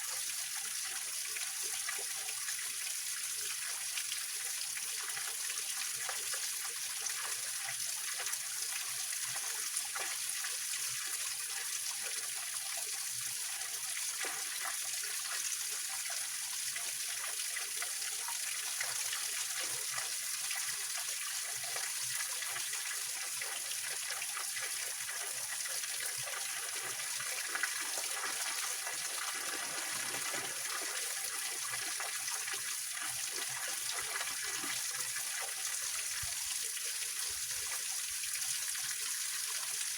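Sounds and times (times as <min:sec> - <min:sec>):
water splashing over rocks: 0:27.0 - 0:32.1.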